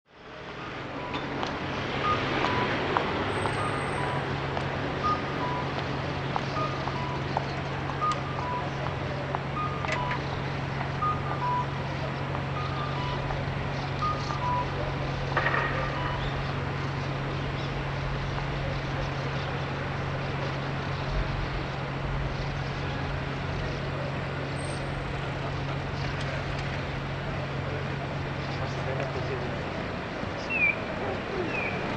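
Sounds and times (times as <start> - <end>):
vehicle engine idling: 0.2 - 31.9
two-pitch electronic beep: 5.0 - 5.8, 9.5 - 11.8, 12.5 - 13.3, 14.0 - 14.8
bird chirps: 11.0 - 17.8, 30.4 - 31.8.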